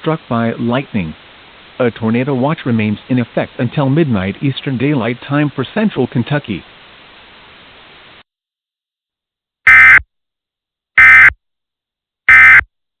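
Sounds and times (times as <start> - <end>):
faint hiss: 0.0 - 8.2
digital data bursts: 9.7 - 10.0, 11.0 - 11.3, 12.3 - 12.6.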